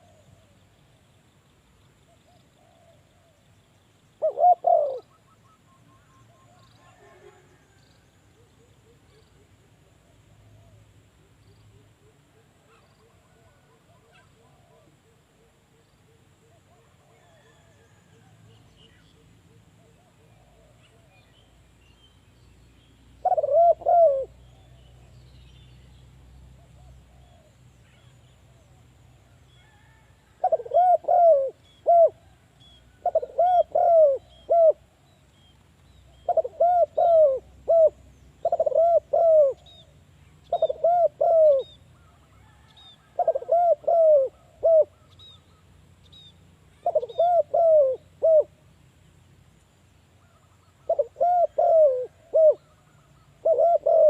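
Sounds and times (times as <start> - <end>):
dove cooing: 0.0 - 0.6, 4.2 - 7.7, 11.8 - 18.3, 23.2 - 24.8, 29.7 - 32.4, 33.0 - 34.9, 36.1 - 45.4, 46.8 - 48.6, 50.2 - 54.0.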